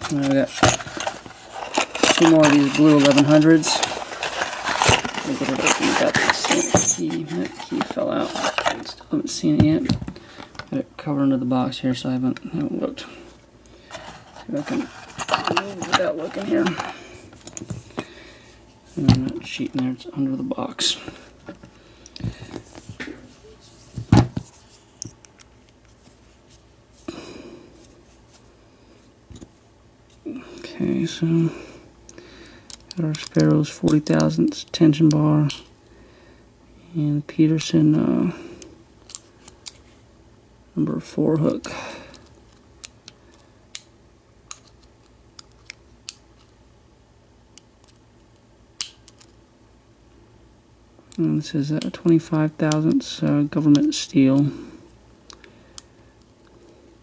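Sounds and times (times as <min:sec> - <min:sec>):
scraping rustle: 0:00.0 - 0:09.0, 0:13.9 - 0:17.0.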